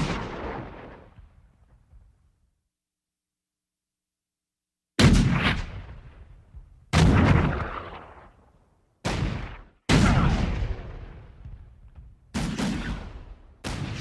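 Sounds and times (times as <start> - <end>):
cannon booms echoing: 0.0 - 2.0, 5.0 - 14.0.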